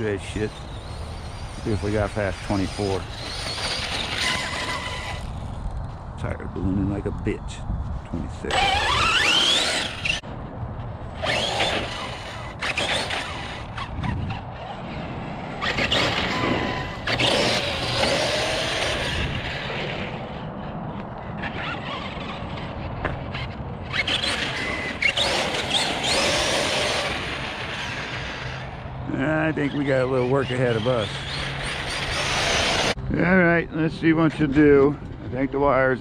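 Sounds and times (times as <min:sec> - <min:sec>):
electric motor whining: 0:00.0 - 0:06.1, 0:08.4 - 0:10.3, 0:11.1 - 0:33.0
tyres rushing on dirt: 0:11.2 - 0:20.3, 0:21.4 - 0:33.0.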